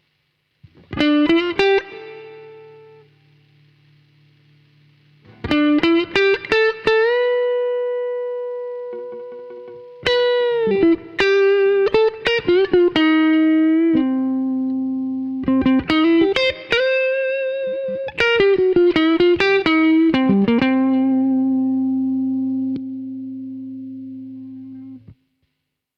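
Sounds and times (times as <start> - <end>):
electric guitar lead phrases: 0.0 - 25.2.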